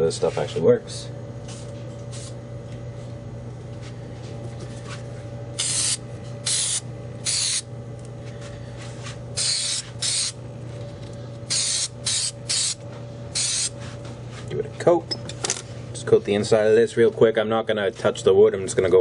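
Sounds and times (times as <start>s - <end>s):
steady low hum: 0.0s - 19.0s
aerosol spray can hissing: 5.6s - 7.6s, 9.4s - 10.4s, 11.5s - 12.8s, 13.4s - 13.7s.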